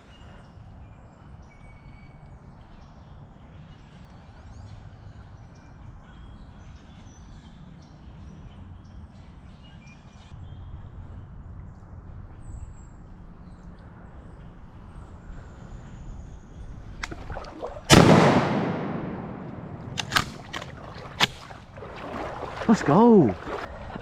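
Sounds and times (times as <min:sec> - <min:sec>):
steady low rumble: 0:10.6 - 0:24.0.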